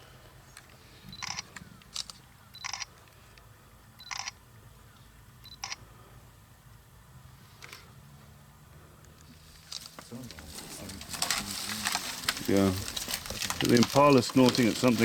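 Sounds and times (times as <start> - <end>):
camera shutter firing: 1.2 - 2.9.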